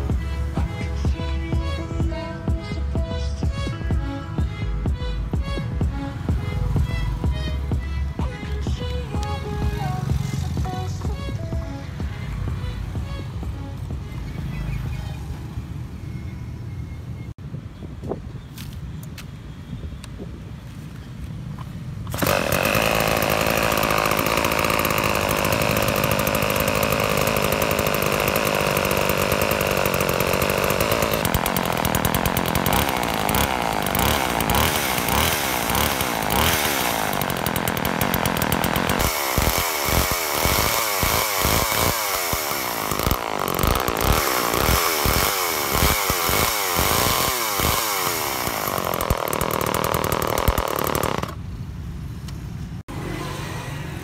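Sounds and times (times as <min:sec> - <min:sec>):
chainsaw engine running: 0:06.1 - 0:13.1, 0:22.1 - 0:51.4.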